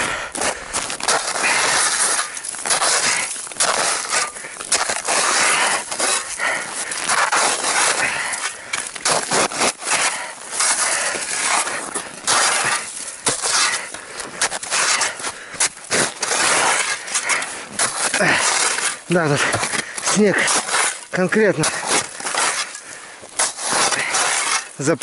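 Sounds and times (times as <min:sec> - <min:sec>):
crunching and scraping snow crust: 0:00.0 - 0:25.0
snow crust breaking cracks: 0:00.4 - 0:08.0.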